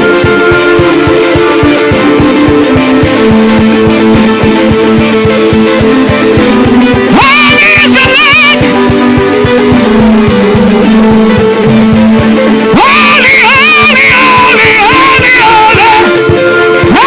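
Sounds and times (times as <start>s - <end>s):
band holding sustained chords: 0.0s - 7.2s, 7.8s - 13.2s
steady drum beat: 0.0s - 17.0s
person singing wordless line: 6.4s - 9.6s, 12.6s - 17.0s.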